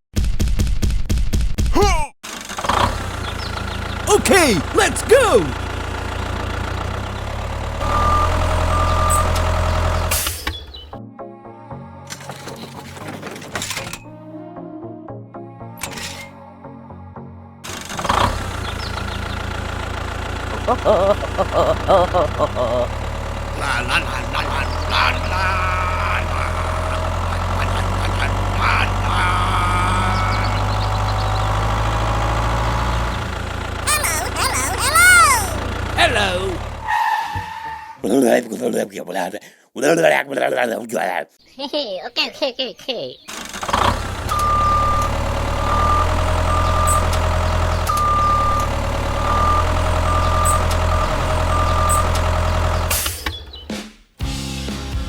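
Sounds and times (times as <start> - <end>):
tractor engine droning: 2.3 - 10.4, 17.7 - 33.9, 35.6 - 37.0, 43.3 - 53.0
reversing alarm beeping: 7.8 - 9.5, 44.3 - 47.2, 47.8 - 52.3.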